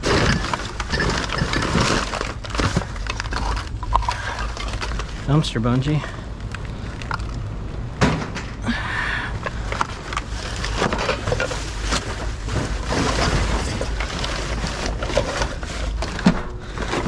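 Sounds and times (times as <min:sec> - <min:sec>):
junk knocking and clattering: 0:00.0 - 0:05.2, 0:08.0 - 0:08.6
low steady hum: 0:00.0 - 0:17.0.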